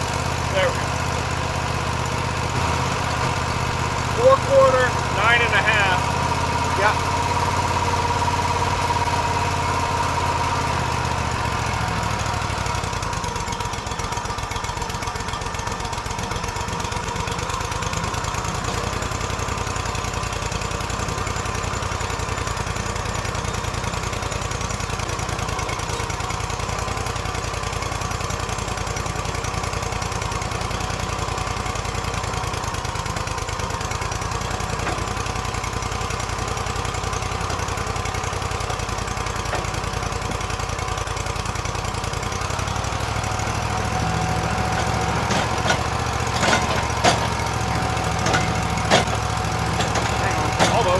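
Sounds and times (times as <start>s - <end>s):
deep drone: 0.0s - 27.8s
sawmill engine running: 0.0s - 50.9s.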